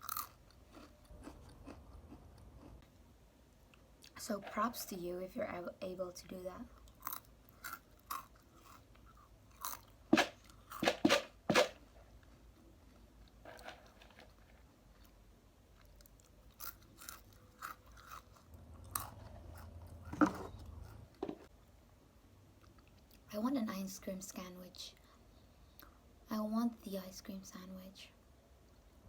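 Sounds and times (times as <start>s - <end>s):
close-up chewing: 0.0s - 2.9s, 6.7s - 10.8s, 12.0s - 21.2s.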